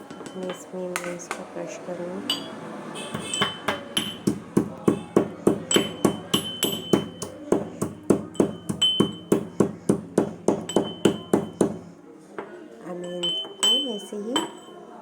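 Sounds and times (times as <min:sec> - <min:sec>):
spices being pounded: 0:03.0 - 0:11.9.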